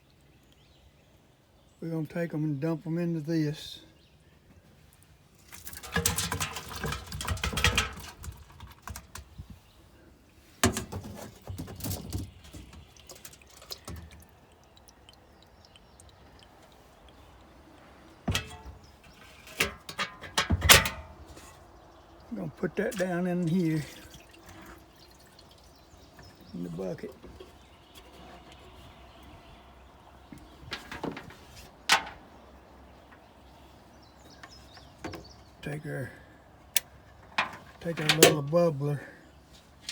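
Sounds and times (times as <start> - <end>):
water and fish splashing: 10.4 - 19.7, 21.3 - 30.3.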